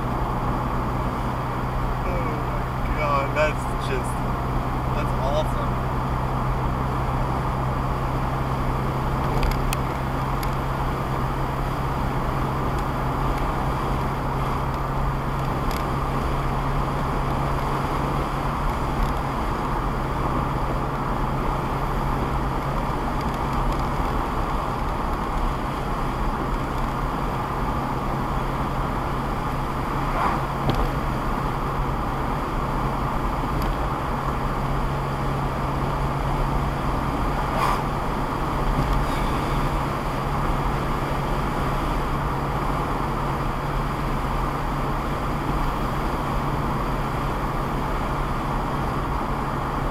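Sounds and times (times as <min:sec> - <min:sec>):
car engine drone: 0:00.0 - 0:49.9
road and tyre noise: 0:00.0 - 0:49.9.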